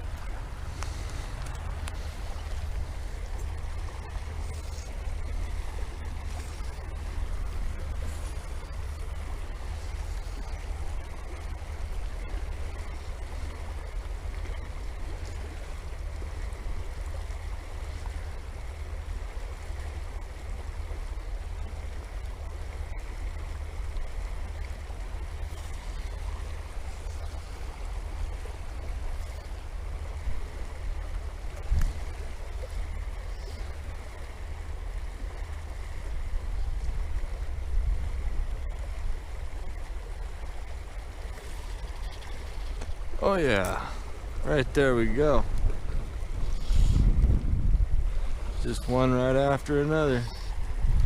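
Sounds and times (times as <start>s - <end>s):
flowing river water: 0.0s - 51.0s
wind buffeting microphone: 25.9s - 33.4s, 35.0s - 51.0s.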